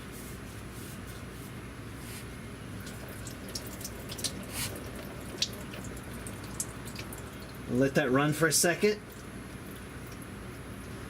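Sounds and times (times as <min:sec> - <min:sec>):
oil dripping into pan: 0:02.8 - 0:07.7, 0:09.0 - 0:11.0.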